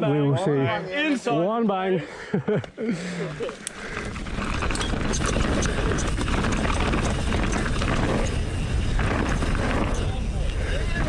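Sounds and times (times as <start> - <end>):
tyre and trail noise: 2.9 - 11.0
bike clicks and rattles: 3.4 - 11.0
wind rumble on camera: 4.0 - 11.0.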